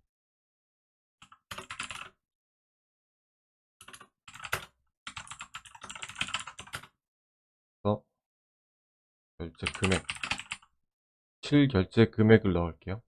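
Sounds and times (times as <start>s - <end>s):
computer keyboard typing: 1.2s - 2.1s, 3.8s - 6.9s, 9.6s - 10.7s.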